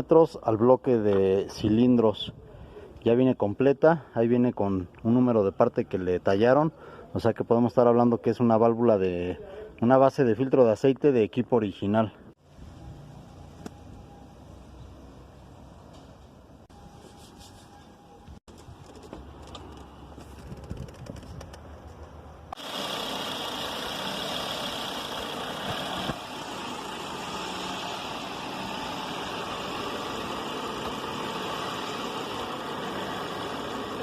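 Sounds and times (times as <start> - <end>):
car engine running: 22.5 - 34.0.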